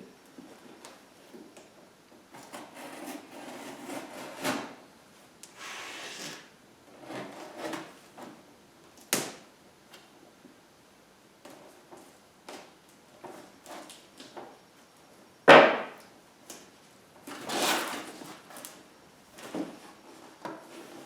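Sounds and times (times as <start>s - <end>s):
tape pulling: 5.6s - 6.5s
sharp knocks: 15.5s - 16.0s.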